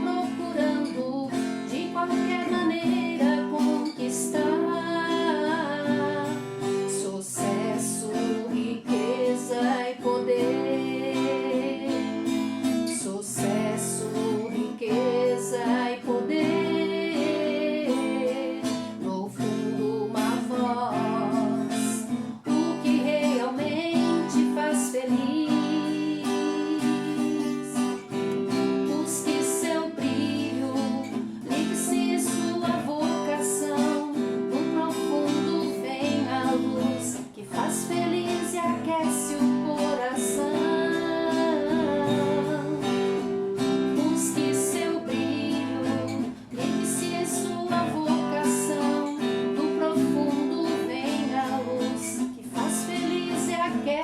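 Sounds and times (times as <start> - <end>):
strummed acoustic guitar: 0.0 - 54.0.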